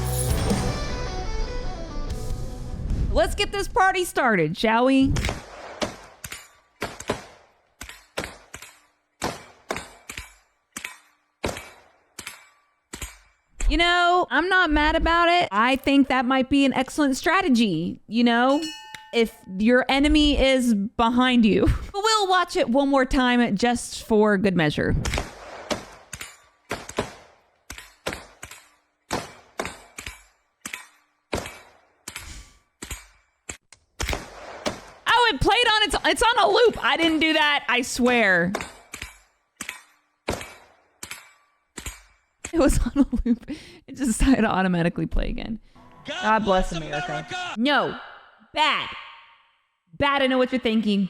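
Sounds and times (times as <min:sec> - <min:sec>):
gunshots with echo: 0:05.2 - 0:06.2, 0:25.2 - 0:26.2, 0:34.0 - 0:35.0.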